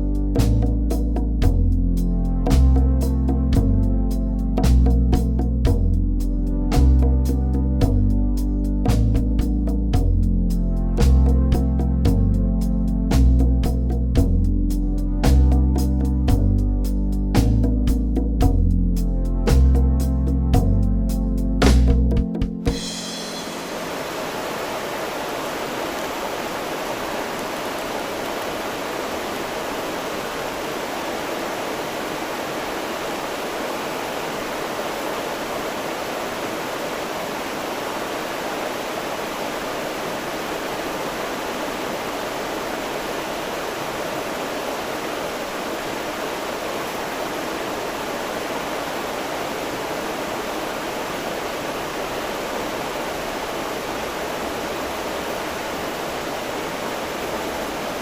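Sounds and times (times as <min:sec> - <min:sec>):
river water rushing: 0:22.8 - 0:58.0.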